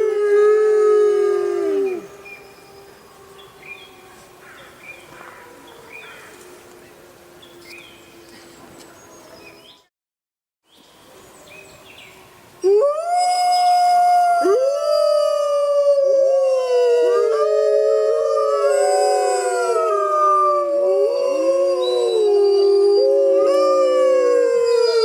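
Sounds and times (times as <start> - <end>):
wolves howling in chorus: 0.0 - 4.4, 13.9 - 25.0.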